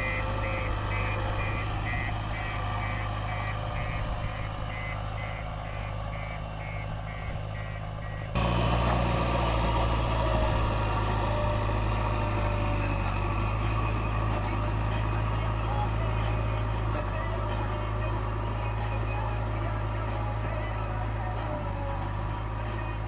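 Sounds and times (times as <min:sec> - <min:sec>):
reversing alarm beeping: 0:00.0 - 0:08.8
diesel engine running: 0:00.0 - 0:23.0.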